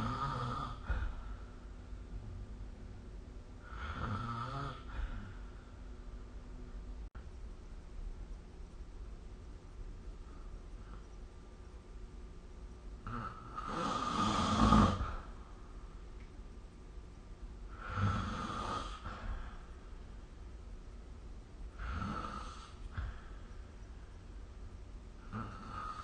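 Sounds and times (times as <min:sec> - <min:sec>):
person snoring: 0:00.0 - 0:01.4, 0:03.6 - 0:05.4, 0:13.0 - 0:15.4, 0:17.7 - 0:19.6, 0:21.8 - 0:23.3, 0:25.2 - 0:26.0.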